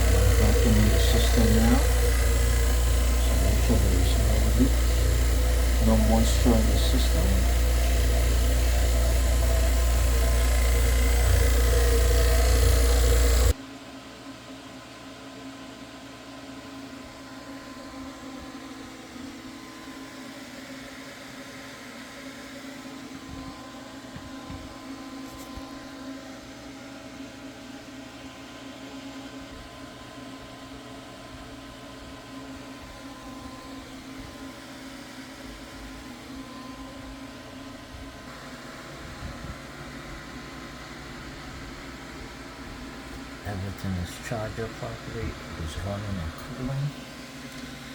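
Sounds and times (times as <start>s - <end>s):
faint steady tones: 0.0s - 13.6s
refrigerator compressor hum: 0.0s - 13.6s, 23.2s - 47.9s.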